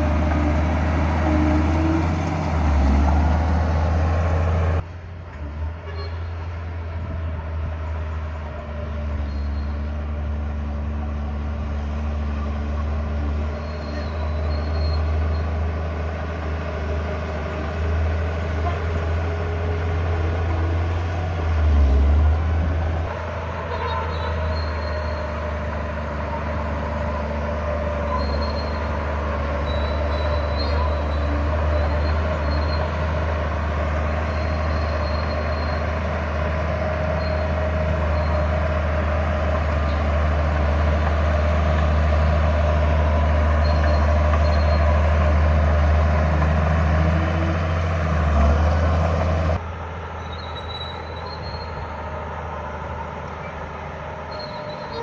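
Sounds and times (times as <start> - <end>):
bulldozer diesel engine running: 0.0 - 55.0
steel tracks squealing: 13.2 - 15.8, 23.1 - 40.7, 41.3 - 46.3, 50.2 - 52.2, 53.4 - 55.0.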